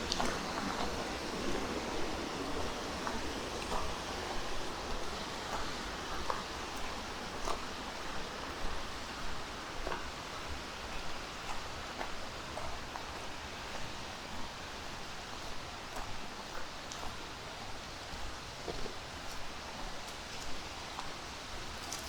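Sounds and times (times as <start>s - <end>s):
stream rushing: 0.0s - 15.4s.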